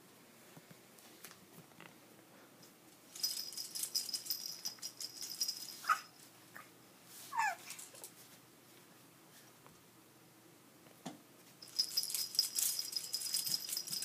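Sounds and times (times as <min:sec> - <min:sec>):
jingling rattle: 0:03.1 - 0:06.2, 0:11.6 - 0:14.0
high squeaky cries: 0:07.3 - 0:07.8.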